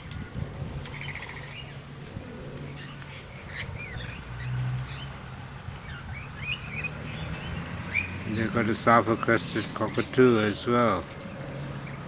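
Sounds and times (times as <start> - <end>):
birds chirping and squawking: 0.1 - 1.8, 2.6 - 12.0.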